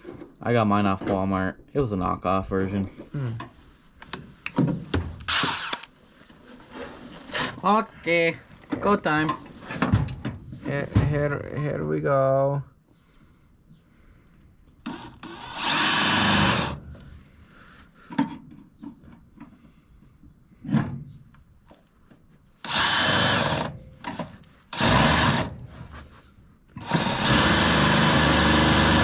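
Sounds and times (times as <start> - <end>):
power drill motor whining: 5.2 - 5.9, 14.9 - 16.8, 22.6 - 25.6, 26.8 - 29.0.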